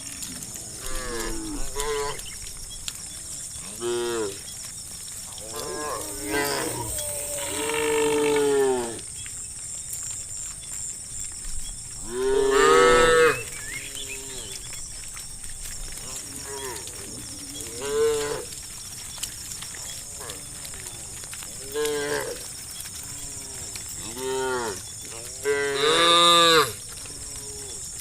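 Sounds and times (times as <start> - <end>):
cows mooing: 0.0 - 2.3, 3.1 - 4.5, 5.3 - 9.0, 12.0 - 14.7, 16.0 - 18.7, 19.8 - 27.8.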